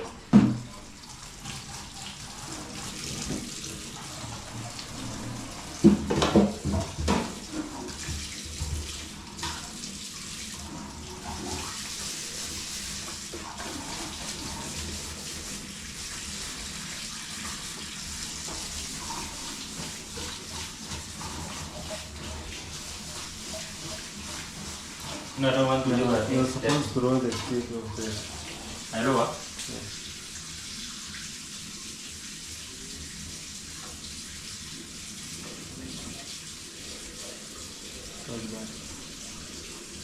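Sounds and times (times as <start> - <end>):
water hissing: 6.6 - 30.5.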